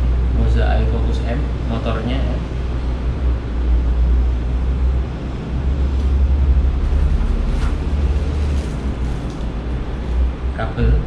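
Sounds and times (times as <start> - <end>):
steady low rumble: 0.0 - 11.0
faint handling rustles: 5.8 - 10.5.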